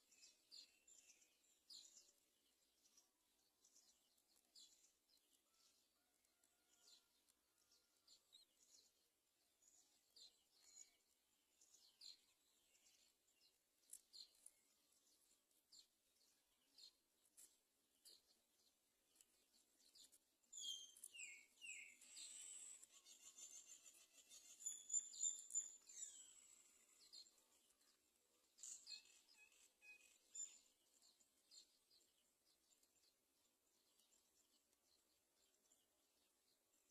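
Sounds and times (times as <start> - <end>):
faint high bird chirps: 0.0 - 36.9
high-pitched bird chirps: 20.6 - 26.6.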